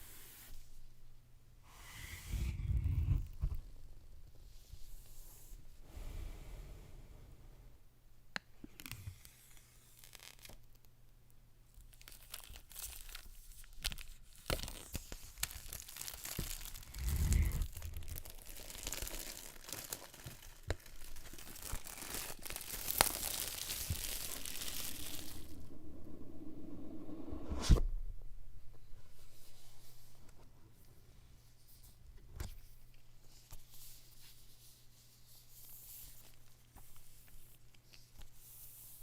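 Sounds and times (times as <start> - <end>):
packaging torn and crinkled: 10.0 - 10.8, 11.8 - 25.6.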